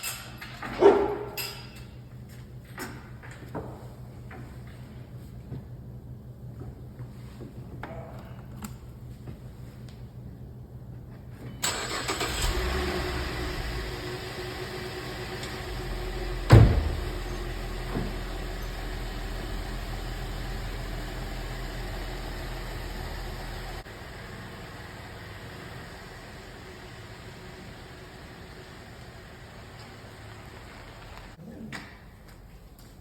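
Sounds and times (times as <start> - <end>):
car engine running: 12.2 - 31.4
loud thump: 16.5 - 17.2.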